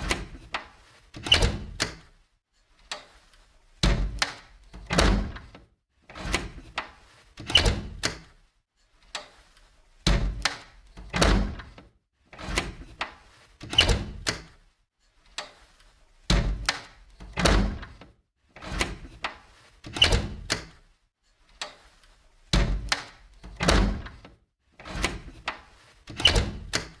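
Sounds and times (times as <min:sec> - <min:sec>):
window rattling open and shut: 0:01.2 - 0:02.0, 0:03.8 - 0:05.5, 0:07.4 - 0:08.2, 0:10.1 - 0:11.8, 0:12.4 - 0:13.0, 0:13.6 - 0:14.5, 0:16.3 - 0:20.7, 0:22.6 - 0:24.2, 0:24.8 - 0:27.0.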